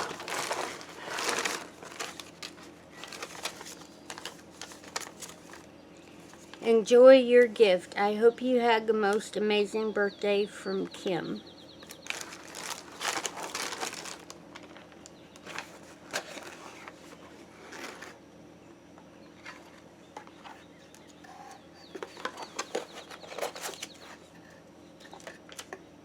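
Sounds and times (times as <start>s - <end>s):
cardboard box being torn open: 0.0s - 2.4s.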